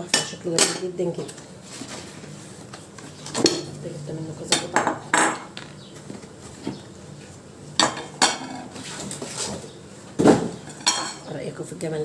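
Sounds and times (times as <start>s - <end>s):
dishes clinking and knocking: 4.5s - 5.8s, 7.8s - 8.8s, 10.2s - 11.3s.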